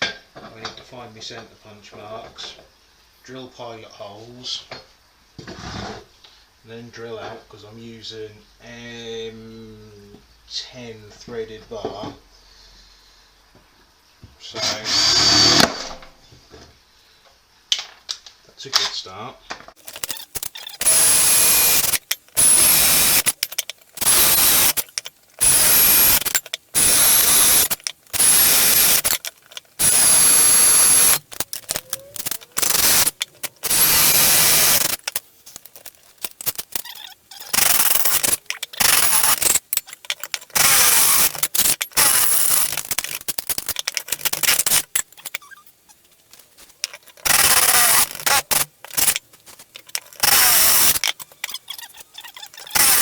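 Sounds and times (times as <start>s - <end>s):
power drill bursts: 14.6s - 15.8s, 19.8s - 45.6s, 47.1s - 49.2s, 49.8s - 53.0s.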